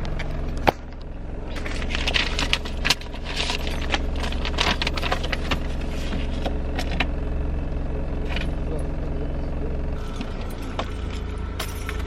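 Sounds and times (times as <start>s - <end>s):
car engine idling: 0.0s - 12.0s
small objects clinking and rustling: 1.6s - 7.0s.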